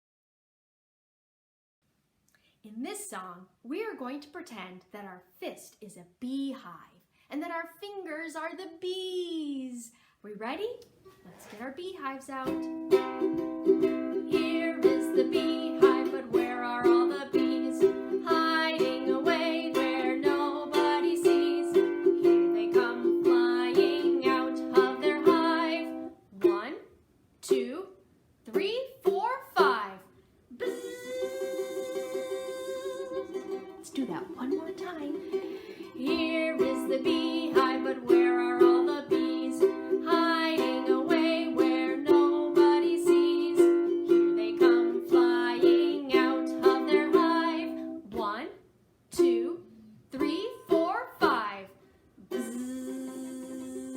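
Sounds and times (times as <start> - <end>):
ukulele strumming: 12.4 - 26.7, 28.6 - 29.9, 30.6 - 48.0, 49.2 - 49.6, 50.2 - 51.6, 52.3 - 53.9
person singing: 12.5 - 26.7, 30.5 - 33.9, 34.5 - 48.4, 52.3 - 53.9.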